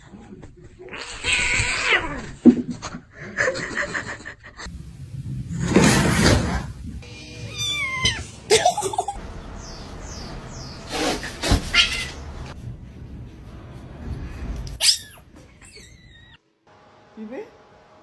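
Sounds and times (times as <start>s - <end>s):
cat meowing: 7.1s - 8.4s, 11.6s - 12.2s.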